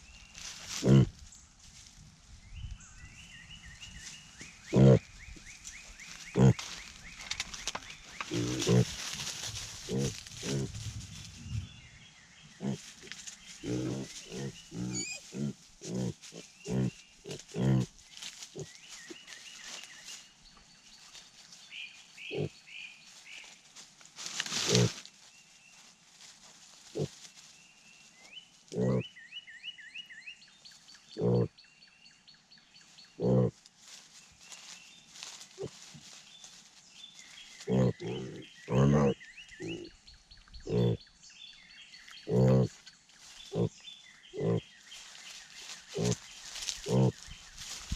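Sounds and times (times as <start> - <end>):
pigs grunting: 0.7 - 1.2, 4.7 - 5.1, 6.3 - 6.7, 8.2 - 11.0, 12.6 - 17.9, 24.6 - 25.0, 28.7 - 29.1, 31.2 - 31.5, 33.2 - 33.6, 37.7 - 39.9, 40.6 - 41.0, 42.2 - 42.8, 44.4 - 44.6, 45.9 - 46.2, 46.8 - 47.2.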